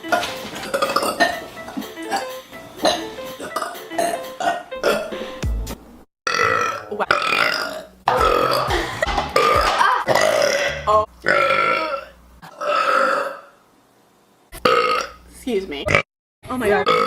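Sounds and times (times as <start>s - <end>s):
woman burping: 0.6s - 5.2s, 6.3s - 13.5s, 14.6s - 15.2s.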